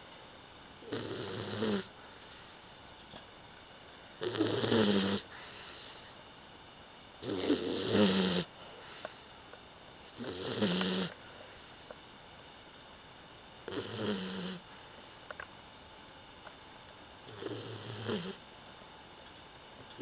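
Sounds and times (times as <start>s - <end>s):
puppy snoring: 0.8s - 2.0s, 4.2s - 5.6s, 7.2s - 8.5s, 10.1s - 11.2s, 13.6s - 14.7s, 17.2s - 18.4s.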